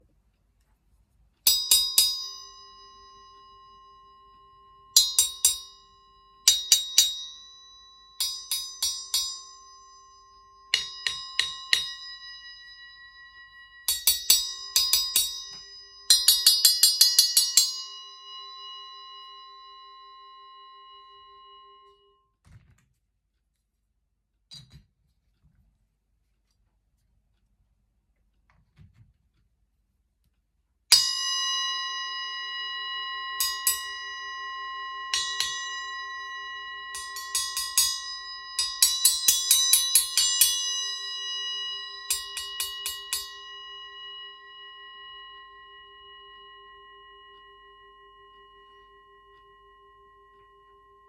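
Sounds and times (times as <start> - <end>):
small bell struck and ringing: 1.5 - 22.2, 30.9 - 51.0.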